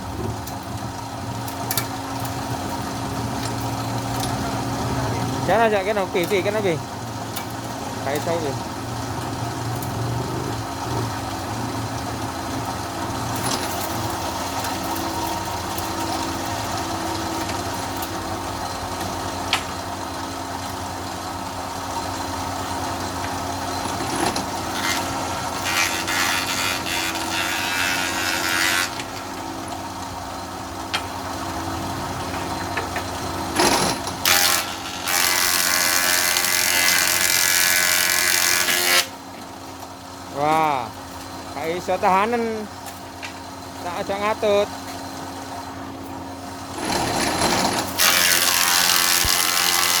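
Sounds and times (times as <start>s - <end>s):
boards being planed: 24.0s - 29.5s, 32.2s - 39.1s, 46.7s - 50.0s
electric wood planer motor hum: 24.6s - 29.5s, 33.6s - 39.1s, 46.7s - 50.0s.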